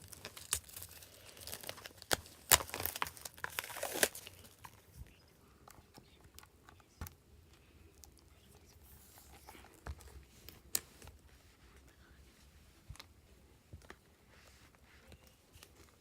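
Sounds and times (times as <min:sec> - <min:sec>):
packaging rustling: 0:00.0 - 0:05.0.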